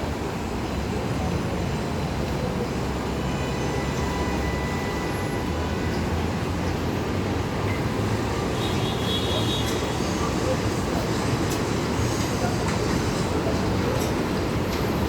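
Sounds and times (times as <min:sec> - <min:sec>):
train rumbling on elevated tracks: 0:00.0 - 0:15.0.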